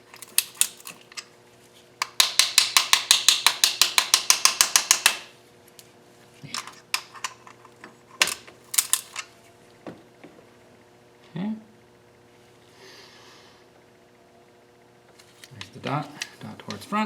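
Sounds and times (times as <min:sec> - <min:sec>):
tools knocking on metal: 0:02.0 - 0:05.2.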